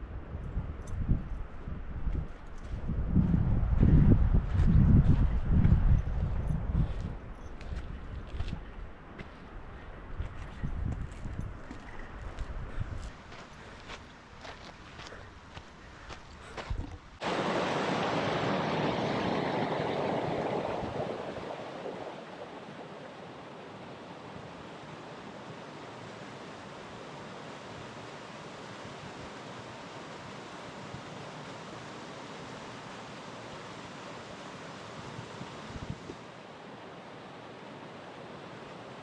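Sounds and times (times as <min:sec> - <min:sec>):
waterfall rushing: 0:17.2 - 0:24.2.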